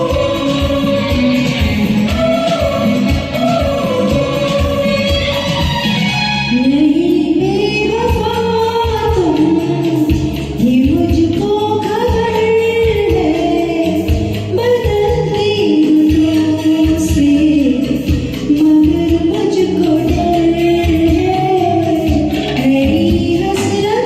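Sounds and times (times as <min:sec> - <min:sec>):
person singing long sliding notes: 0:00.0 - 0:05.7
backing music: 0:00.0 - 0:24.0.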